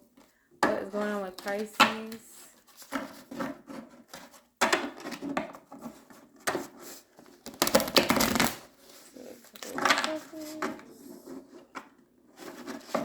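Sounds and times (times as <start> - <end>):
cards being shuffled: 7.4 - 10.8.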